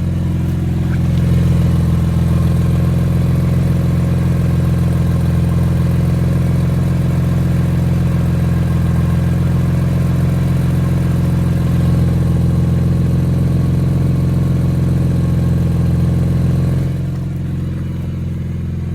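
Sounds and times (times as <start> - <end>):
car engine idling: 0.0 - 18.9.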